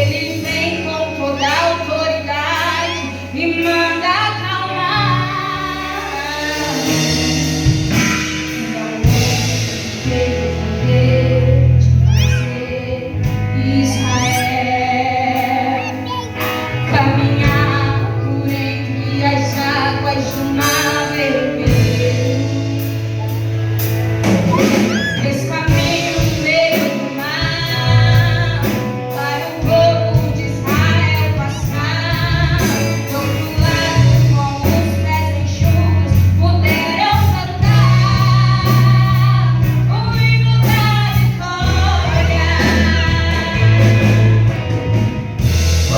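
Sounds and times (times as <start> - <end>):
bass line: 0.0 - 20.7, 21.3 - 26.6, 29.7 - 45.9
woman singing gospel: 0.0 - 23.3, 24.5 - 45.9
drums: 0.0 - 45.9
guitar: 0.0 - 45.9.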